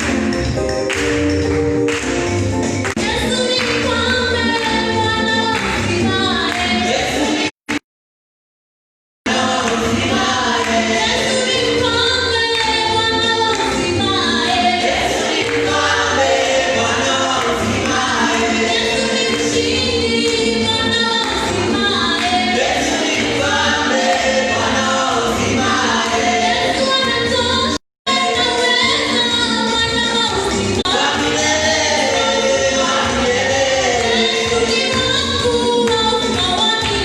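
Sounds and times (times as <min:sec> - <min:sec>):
gospel choir singing: 0:03.0 - 0:07.5, 0:09.3 - 0:37.0.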